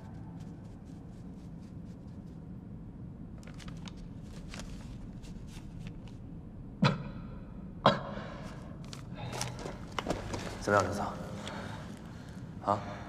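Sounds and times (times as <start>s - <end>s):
steady low hum: 0.0s - 13.0s
faint clicks and rustling: 8.9s - 12.5s.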